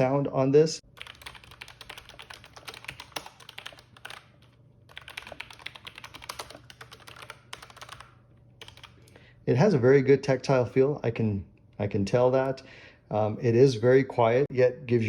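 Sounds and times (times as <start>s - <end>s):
quiet keyboard typing: 0.9s - 9.2s.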